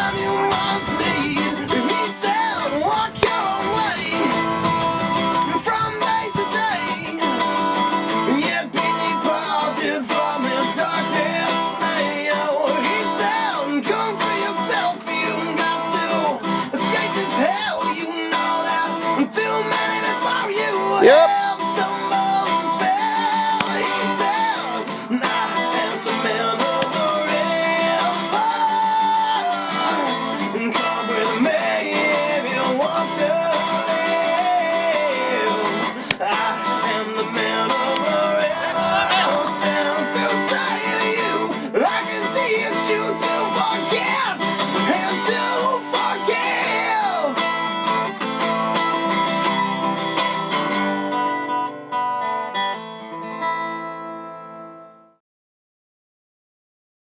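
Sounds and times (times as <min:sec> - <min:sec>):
person singing: 0:00.0 - 0:47.5
strummed acoustic guitar: 0:00.0 - 0:55.1.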